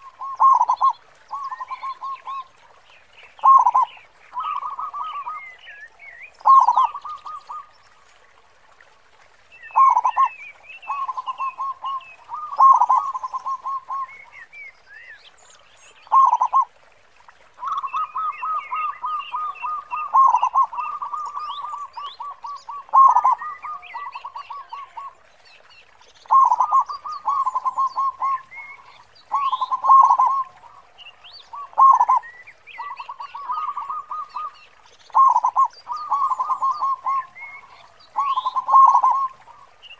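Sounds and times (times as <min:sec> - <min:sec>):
dove cooing: 0:00.0 - 0:02.4, 0:03.4 - 0:05.4, 0:10.9 - 0:14.0, 0:16.1 - 0:16.7, 0:17.7 - 0:25.1, 0:26.3 - 0:30.8, 0:31.6 - 0:32.2, 0:35.2 - 0:39.4.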